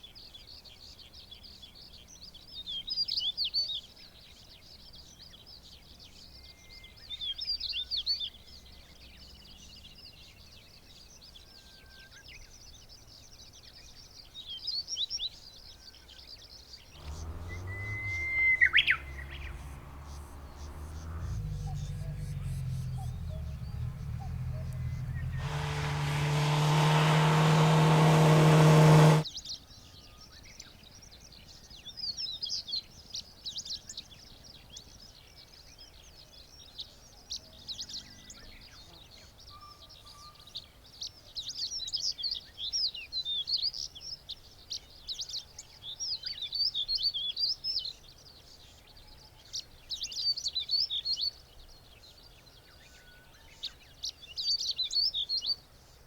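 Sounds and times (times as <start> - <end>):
vehicle engine and road noise: 16.9 - 29.2
songbird twittering: 17.0 - 25.3.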